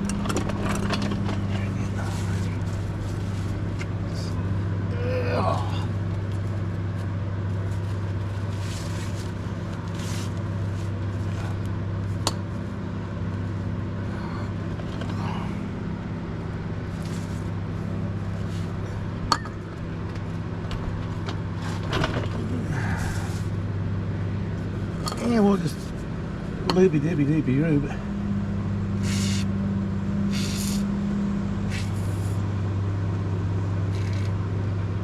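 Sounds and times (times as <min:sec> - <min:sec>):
low mechanical hum: 0:00.0 - 0:35.0.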